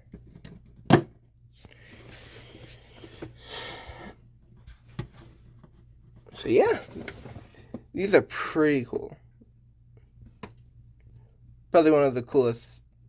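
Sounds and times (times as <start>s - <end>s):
soft rustling movement: 1.5s - 3.4s.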